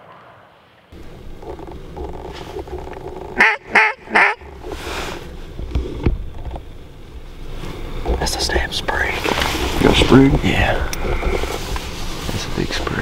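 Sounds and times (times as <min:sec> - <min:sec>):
low rumble: 0:00.0 - 0:13.0
duck quacks: 0:03.4 - 0:04.5.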